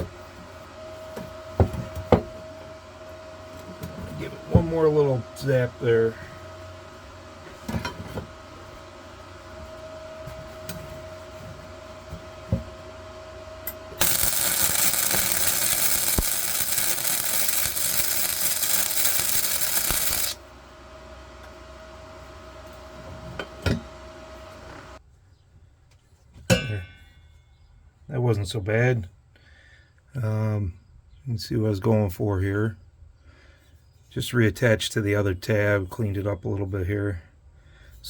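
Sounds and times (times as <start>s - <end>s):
welding crackling hiss: 14.0s - 20.4s.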